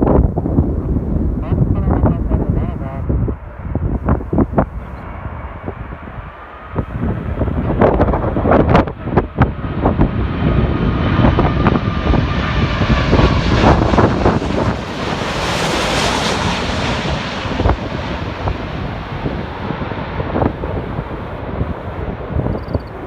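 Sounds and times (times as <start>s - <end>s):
wind thumps on microphone: 0.0s - 15.3s
jet airliner passing overhead: 0.0s - 23.0s.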